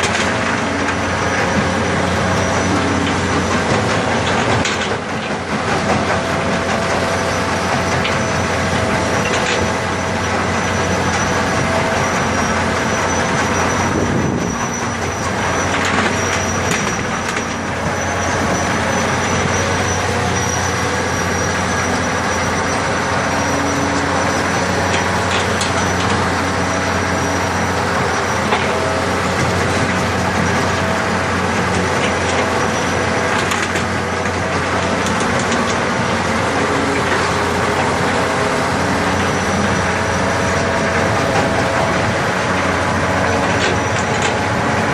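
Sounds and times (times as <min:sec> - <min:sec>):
knocks and clanks: 0:00.0 - 0:21.4, 0:22.4 - 0:44.9
digging machine engine running: 0:00.0 - 0:44.9.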